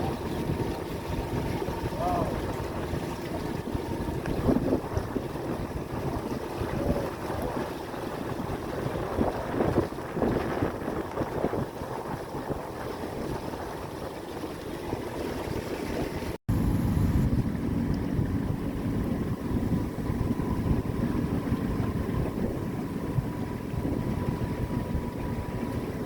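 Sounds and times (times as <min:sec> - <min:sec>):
water splashing and rushing: 0:00.0 - 0:26.0
wind buffeting microphone: 0:00.0 - 0:26.0
low rumble: 0:16.5 - 0:26.0.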